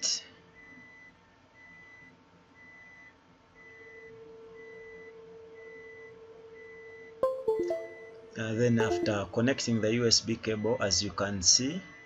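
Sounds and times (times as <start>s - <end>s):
high electronic beeps: 7.2s - 9.5s.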